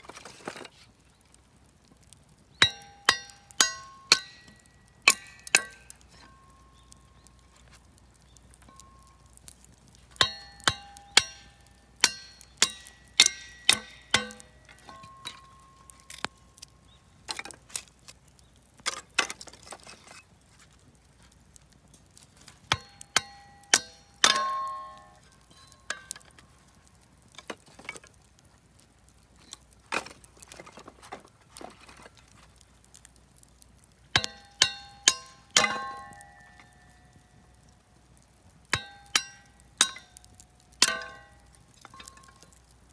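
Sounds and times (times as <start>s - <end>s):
burning wood popping: 0.0s - 42.9s
metallic clinks in fire pit: 0.1s - 42.9s.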